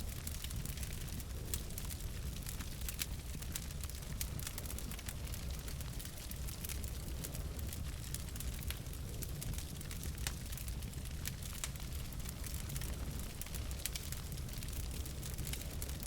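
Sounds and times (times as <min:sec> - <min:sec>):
logs crackling and popping: 0:00.0 - 0:16.0
low rumble of flames: 0:00.0 - 0:16.0.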